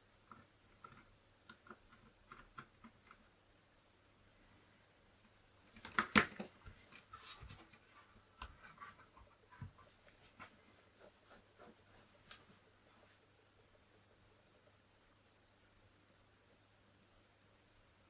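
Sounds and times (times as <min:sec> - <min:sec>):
hands handling computer parts: 0:05.8 - 0:10.6.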